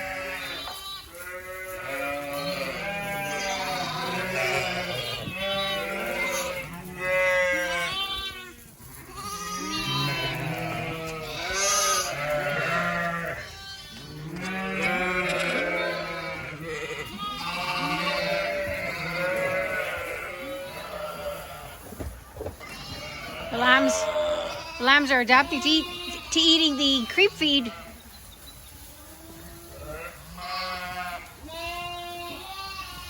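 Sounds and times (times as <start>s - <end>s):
sheep and lambs bleating: 0.0s - 21.9s, 22.6s - 28.1s, 28.9s - 33.0s.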